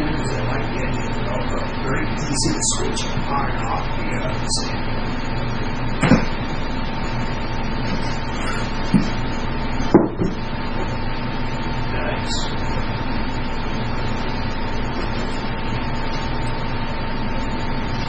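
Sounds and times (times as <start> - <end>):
steady background hum: 0.0 - 18.0
knock: 8.9 - 9.1, 9.9 - 10.4.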